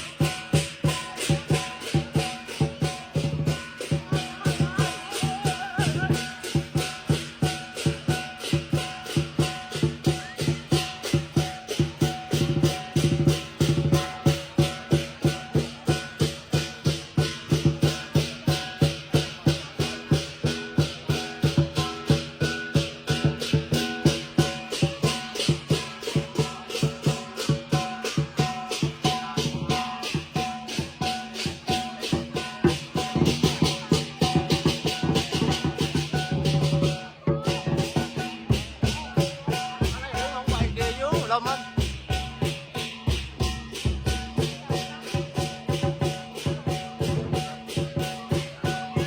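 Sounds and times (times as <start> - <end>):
big drum beating: 0.0 - 49.0
cymbals clashing: 0.0 - 49.0.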